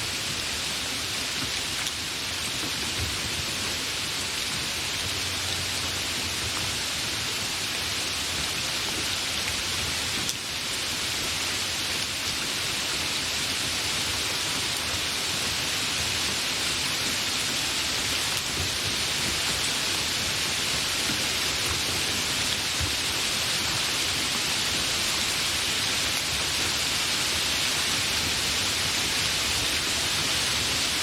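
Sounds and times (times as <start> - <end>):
steady rain: 0.0 - 31.0.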